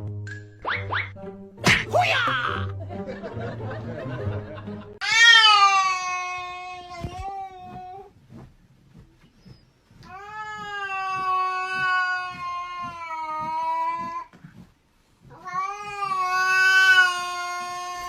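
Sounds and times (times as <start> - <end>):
cat yowling: 5.0 - 8.1, 10.1 - 14.3, 15.3 - 18.0.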